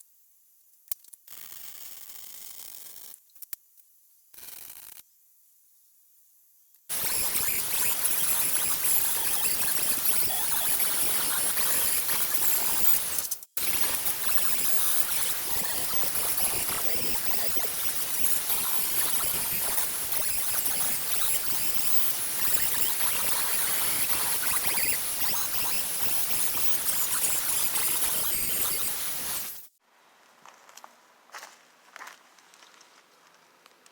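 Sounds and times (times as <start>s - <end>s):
welder arc crackling and hissing: 6.9s - 29.8s.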